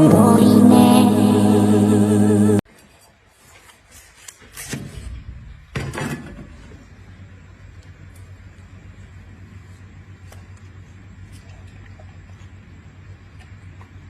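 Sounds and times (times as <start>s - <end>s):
sung music: 0.0s - 2.6s.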